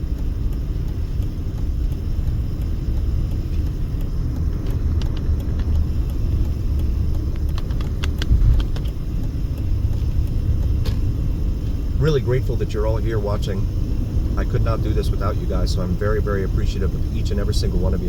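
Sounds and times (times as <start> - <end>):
car road and engine rumble: 0.0 - 18.0.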